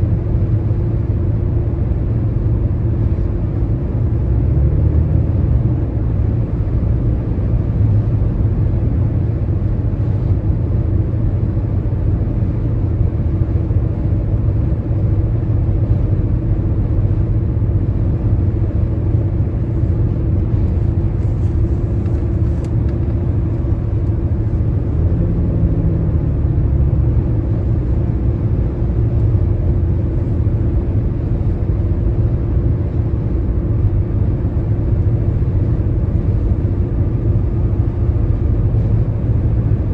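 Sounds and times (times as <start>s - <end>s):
road and tyre rumble: 0.0s - 39.9s.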